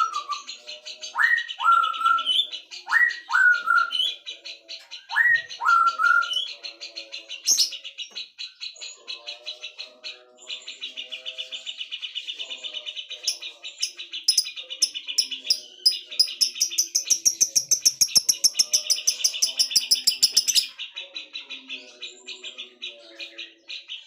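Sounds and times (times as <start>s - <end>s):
bird trilling: 13.0s - 22.8s
sharp high bird chirps: 13.2s - 21.0s.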